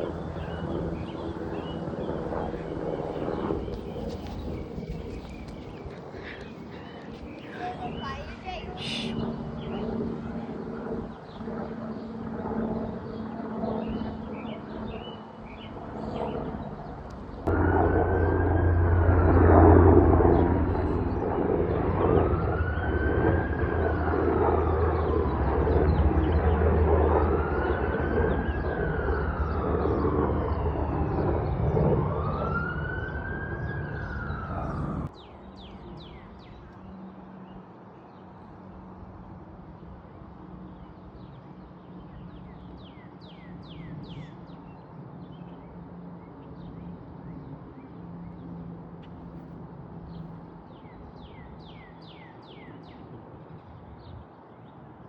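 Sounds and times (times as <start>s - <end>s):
steady hum: 17.4s - 24.6s
wailing siren: 17.5s - 35.1s.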